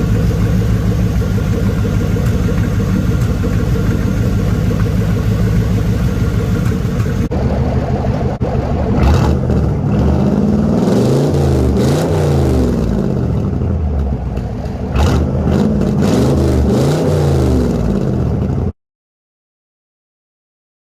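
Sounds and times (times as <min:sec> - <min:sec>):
car engine idling and revving: 0:00.0 - 0:18.8.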